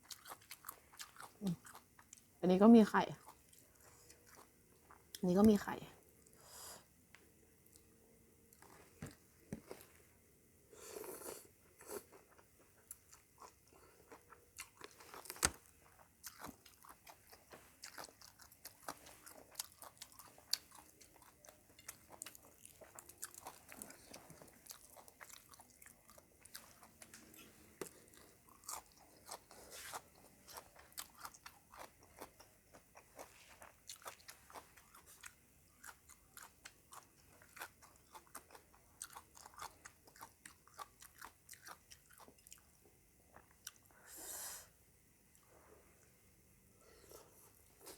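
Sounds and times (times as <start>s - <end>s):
person chewing: 0.0s - 2.2s, 3.2s - 5.2s, 10.8s - 42.7s
crunching bites of crisp food: 11.0s - 42.7s.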